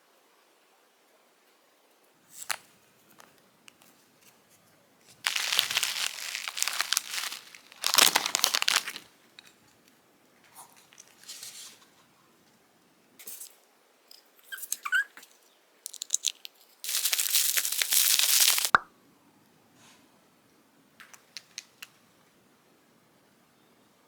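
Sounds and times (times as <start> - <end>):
faint packaging rustle: 2.2 - 12.2, 14.7 - 18.8
packaging crinkling and tearing: 5.3 - 9.1, 15.9 - 18.8.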